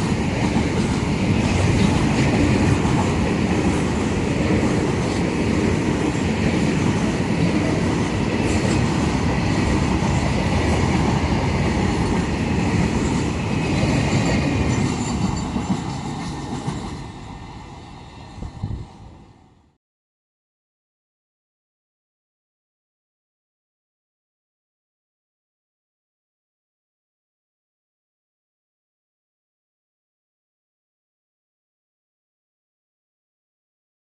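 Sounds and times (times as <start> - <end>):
train passing at speed: 0.0 - 19.8.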